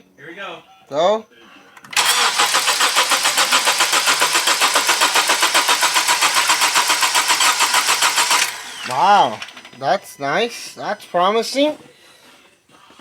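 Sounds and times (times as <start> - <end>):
engine cranking without firing: 1.8 - 9.8.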